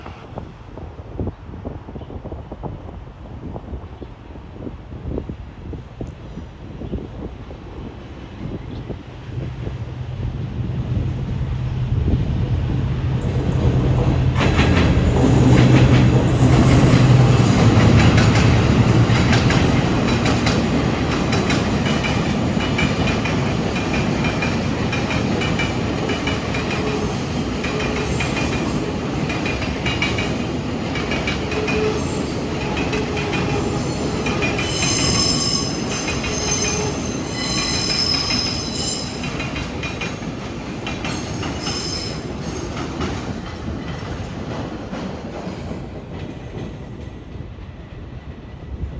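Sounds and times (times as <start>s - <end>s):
diesel locomotive hum: 0.0s - 46.0s
train wagons rumbling: 3.4s - 48.9s
high-pitched wheel squeal: 33.4s - 39.2s.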